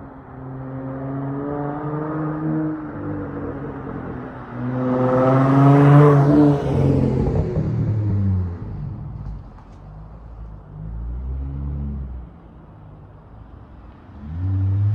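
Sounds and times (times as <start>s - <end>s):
car engine through exhaust: 3.2s - 14.9s.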